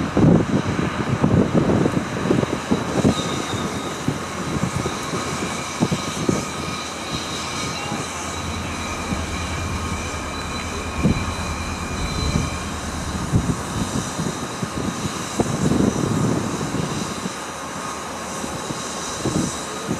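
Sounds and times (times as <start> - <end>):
wind buffeting microphone: 5.6 - 17.0
locomotive engine humming: 6.3 - 15.4
high whining tones: 6.5 - 15.2.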